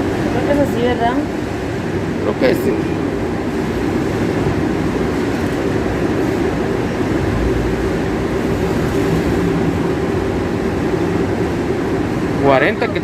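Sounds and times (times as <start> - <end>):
car engine rumble inside cabin: 3.0 - 13.0.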